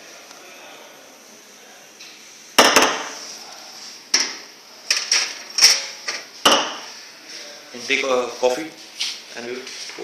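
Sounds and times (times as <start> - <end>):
metal pitcher knocking on counter: 2.6 - 3.2.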